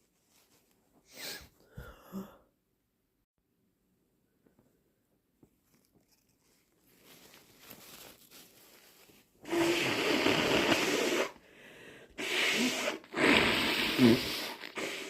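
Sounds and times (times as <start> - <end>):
soft rustling: 0.0 - 1.6, 5.4 - 9.4
person blowing nose: 1.1 - 1.5, 9.4 - 11.4, 12.0 - 15.0.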